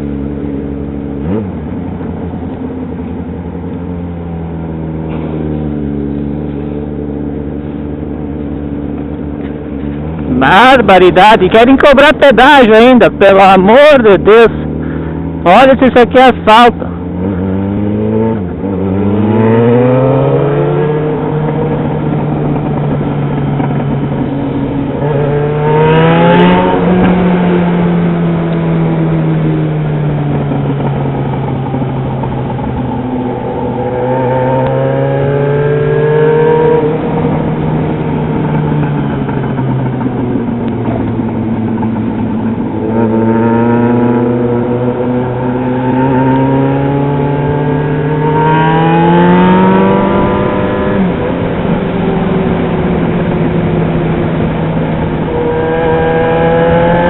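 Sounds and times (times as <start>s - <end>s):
motorcycle engine running: 0.0s - 57.0s.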